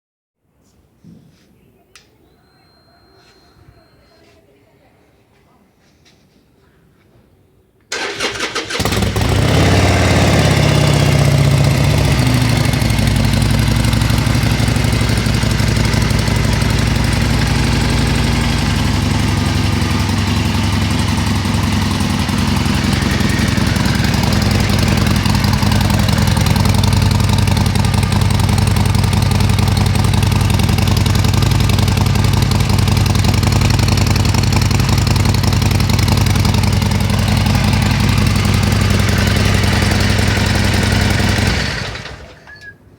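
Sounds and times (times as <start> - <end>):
electric starter cranking: 7.9 - 35.3, 36.2 - 42.8
motorcycle engine idling: 7.9 - 42.7.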